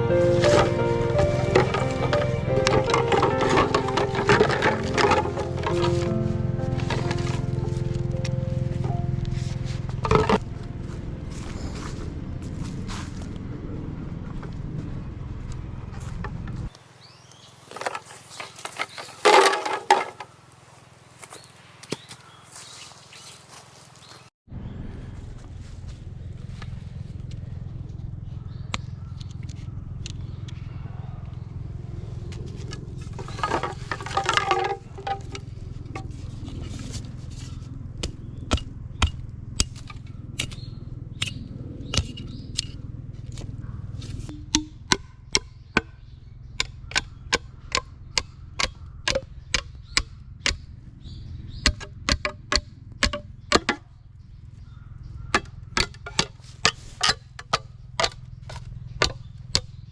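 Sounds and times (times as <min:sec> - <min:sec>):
sharp knocks: 0:00.0 - 0:09.1, 0:33.2 - 0:36.1, 0:44.3 - 0:46.0, 0:46.6 - 0:50.7, 0:51.6 - 0:53.9, 0:55.3 - 0:59.7
steady low hum: 0:00.0 - 0:16.7, 0:24.5 - 0:59.9.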